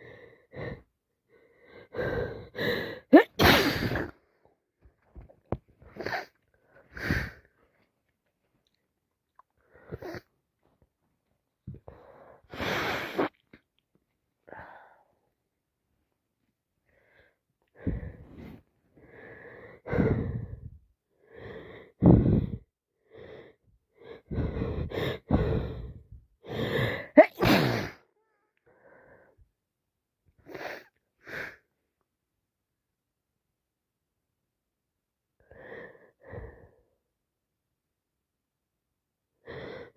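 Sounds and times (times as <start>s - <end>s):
person sneezing: 3.1s - 4.2s, 27.2s - 28.0s.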